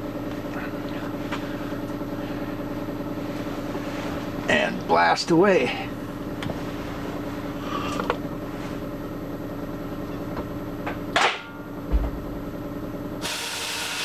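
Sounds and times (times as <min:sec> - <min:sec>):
machine hum: 0:00.0 - 0:14.0
low thump: 0:11.8 - 0:12.5.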